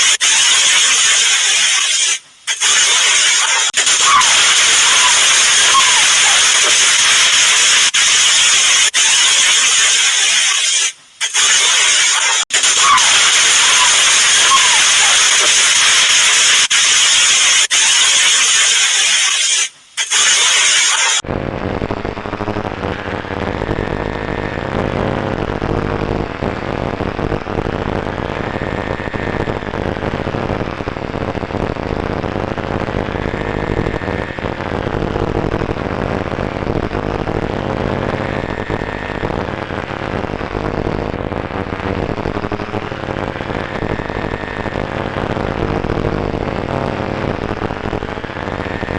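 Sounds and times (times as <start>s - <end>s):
loud static hiss: 0.0s - 48.9s.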